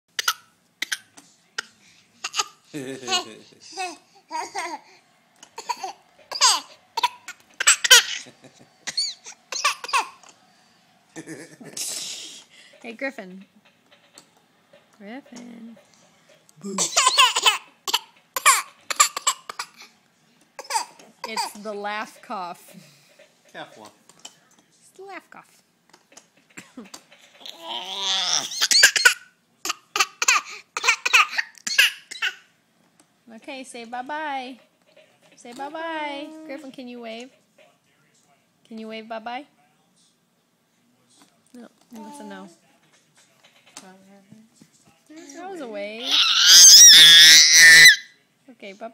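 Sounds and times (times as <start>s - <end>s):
child fake laughing and coughing: 5.6s - 10.2s, 16.7s - 19.8s.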